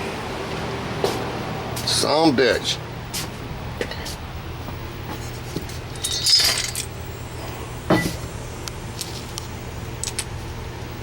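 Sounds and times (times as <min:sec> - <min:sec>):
steady low hum: 0:00.0 - 0:11.0
small hard objects clinking: 0:05.9 - 0:06.9.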